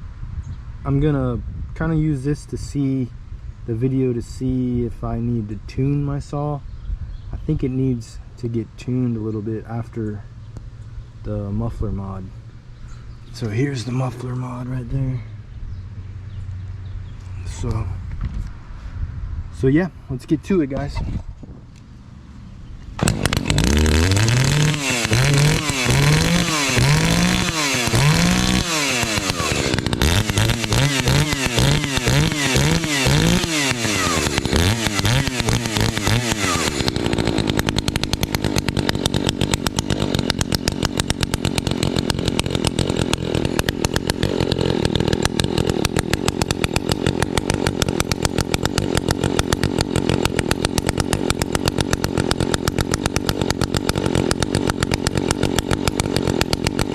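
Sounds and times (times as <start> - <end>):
chainsaw revving: 13.4 - 15.3, 23.0 - 56.9.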